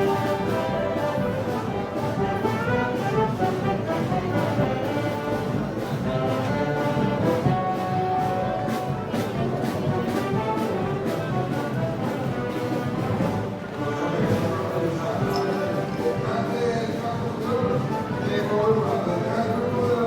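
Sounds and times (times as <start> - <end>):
steady drum beat: 0.0 - 14.8
brass chords: 0.0 - 20.0.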